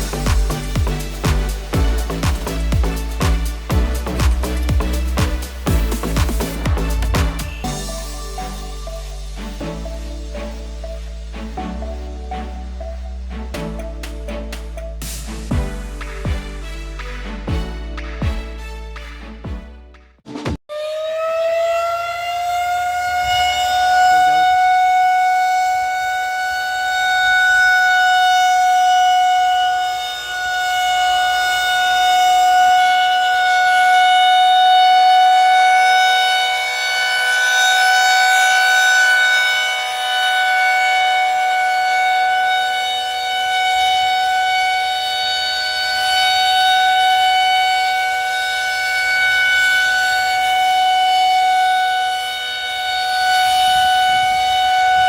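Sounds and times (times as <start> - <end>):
rotating siren wailing: 20.7 - 55.0.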